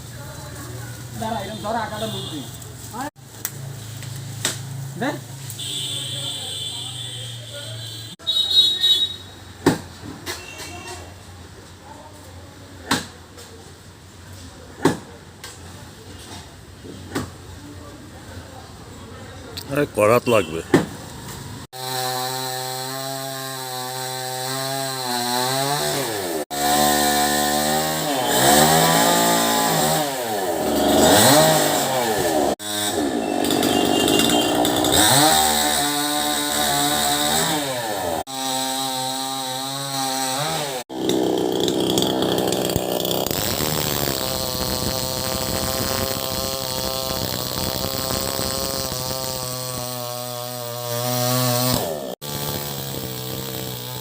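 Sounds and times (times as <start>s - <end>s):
chainsaw revving and cutting: 21.7s - 54.0s.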